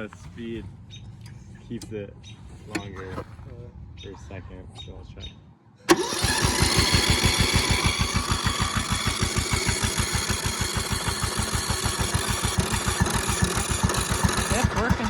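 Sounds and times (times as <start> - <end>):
lawnmower engine running: 5.9 - 15.0.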